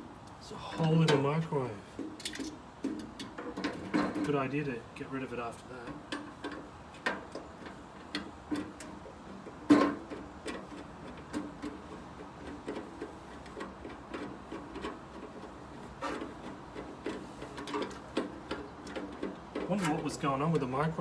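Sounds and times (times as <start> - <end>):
hand tools clicking and knocking: 0.7 - 1.4, 2.0 - 4.5, 5.8 - 21.0.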